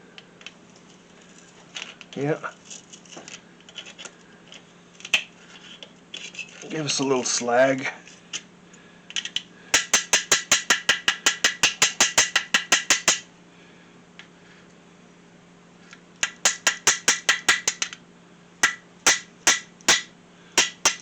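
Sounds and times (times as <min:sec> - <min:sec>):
chipping hammer tapping metal: 0:09.7 - 0:13.3, 0:16.2 - 0:18.0, 0:18.6 - 0:21.0.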